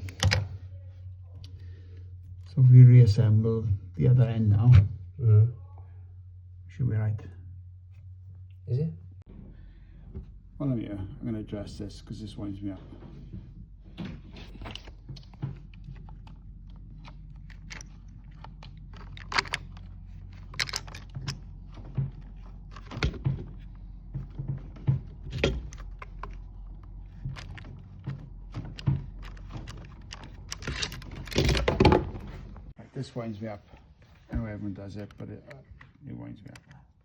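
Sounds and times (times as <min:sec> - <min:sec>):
steady low hum: 0:00.0 - 0:37.0
rustling and scraping: 0:12.6 - 0:37.0
clicks and knocks of hand work: 0:12.9 - 0:32.8.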